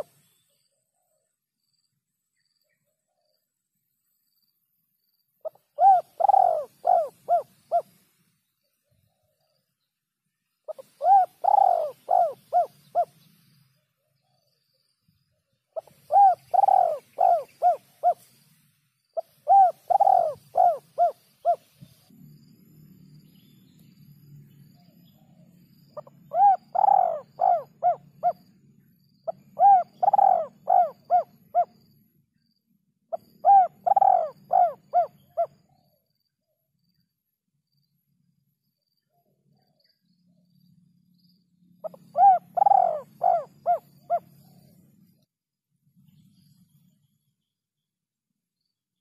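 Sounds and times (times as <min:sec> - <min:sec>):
dove cooing: 0:05.4 - 0:08.0, 0:10.7 - 0:13.2, 0:15.8 - 0:18.3, 0:19.2 - 0:21.7, 0:26.0 - 0:28.5, 0:29.3 - 0:31.8, 0:33.1 - 0:35.8, 0:41.8 - 0:44.8.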